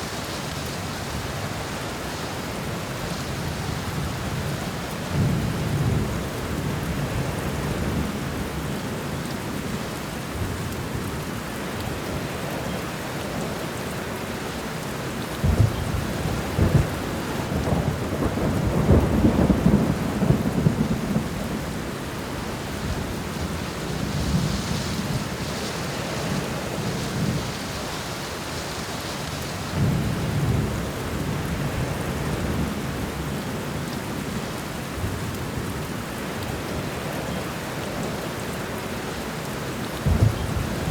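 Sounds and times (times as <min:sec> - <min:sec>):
steady rain: 0:00.0 - 0:40.9
thunder claps and rumbles: 0:03.8 - 0:09.0, 0:15.4 - 0:25.5, 0:29.7 - 0:33.4, 0:39.9 - 0:40.9.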